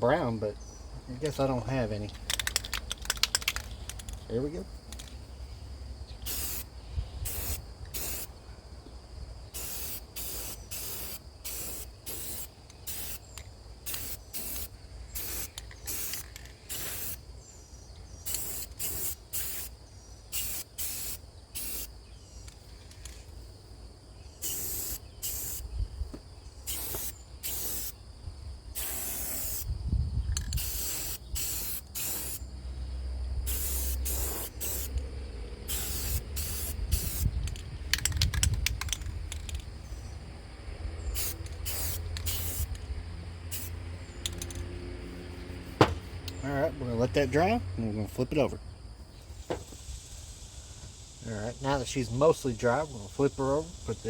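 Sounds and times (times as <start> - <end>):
spray paint can hissing: 2.2 - 4.2, 6.2 - 8.3, 9.5 - 17.2, 18.2 - 22.0, 24.4 - 25.6, 26.6 - 28.0, 28.7 - 29.7, 30.4 - 32.4, 33.4 - 35.0, 35.7 - 39.6, 41.1 - 44.6, 49.4 - 50.5.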